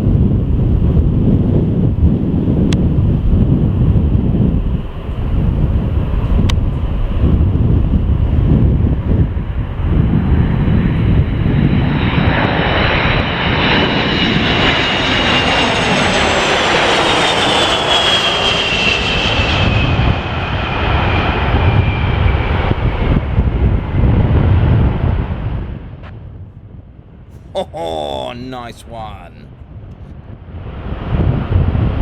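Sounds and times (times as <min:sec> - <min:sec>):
wind rumbling on microphone: 0:00.0 - 0:16.3, 0:19.2 - 0:27.2, 0:29.6 - 0:32.0
jet aircraft roar and whine: 0:00.0 - 0:28.8, 0:29.6 - 0:32.0.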